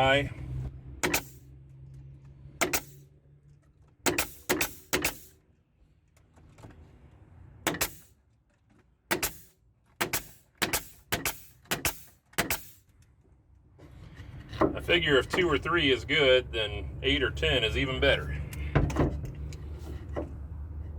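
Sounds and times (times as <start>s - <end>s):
staple gun snapping: 10.0s - 12.8s.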